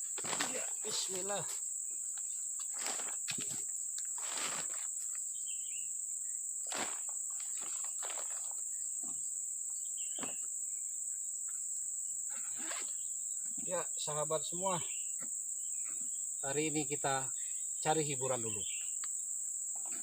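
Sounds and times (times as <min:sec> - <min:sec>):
insects droning: 0:00.0 - 0:20.0
footstep scuffs: 0:06.7 - 0:08.6.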